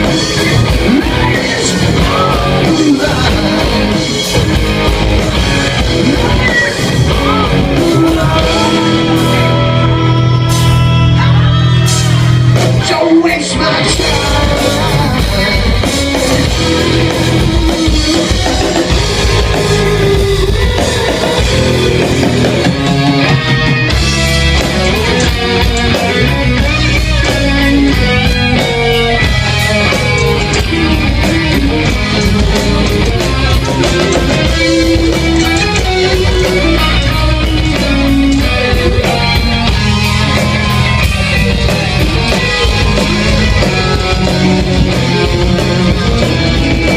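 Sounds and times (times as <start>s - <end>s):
live rock band playing: 0.0s - 46.9s.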